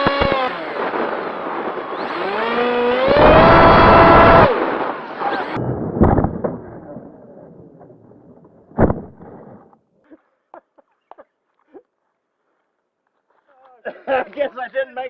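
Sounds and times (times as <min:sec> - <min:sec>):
sharp thumps: 0:05.6 - 0:09.8.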